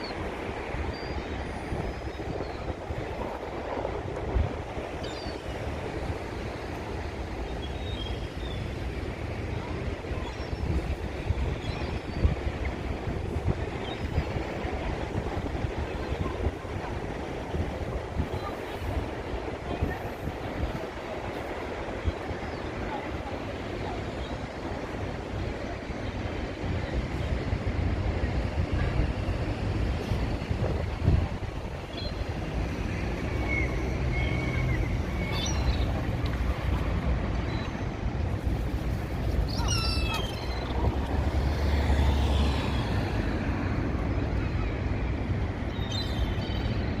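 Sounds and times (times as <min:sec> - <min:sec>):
wind on microphone: 0:00.0 - 0:07.6, 0:08.8 - 0:47.0
traffic rumble: 0:12.2 - 0:47.0
faint seagull cries: 0:39.5 - 0:40.8.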